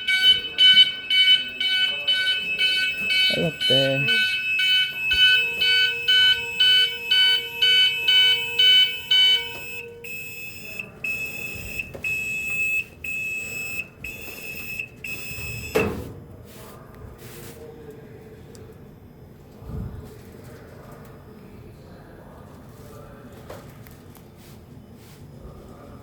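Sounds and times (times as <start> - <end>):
fire alarm beeping: 0.0 - 16.1.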